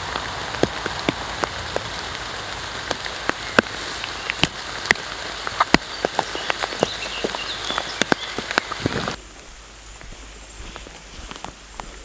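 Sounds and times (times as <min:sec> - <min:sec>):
heavy raindrops ticking: 0:00.0 - 0:09.2
rain falling: 0:00.0 - 0:09.2.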